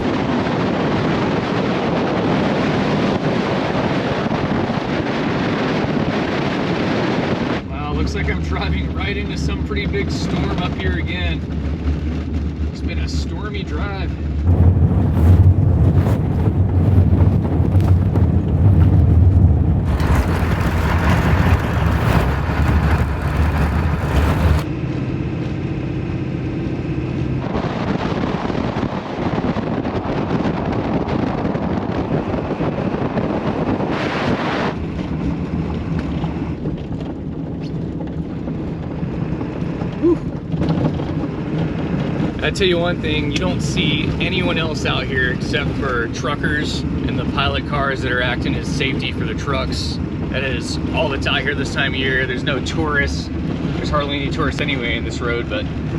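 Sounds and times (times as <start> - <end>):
diesel engine drone: 0.0 - 55.9
road and wind noise: 0.0 - 55.9.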